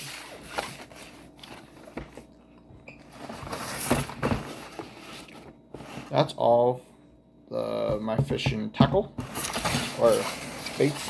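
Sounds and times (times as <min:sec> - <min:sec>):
rustling packages: 0:00.0 - 0:06.4, 0:09.2 - 0:11.0.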